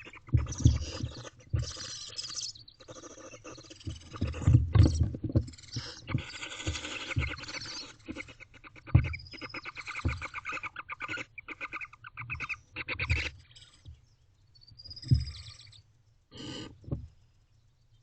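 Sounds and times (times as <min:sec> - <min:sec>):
owlet twittering: 0:00.0 - 0:13.9, 0:14.8 - 0:16.7
dull thumps: 0:00.3 - 0:01.8, 0:16.8 - 0:17.2.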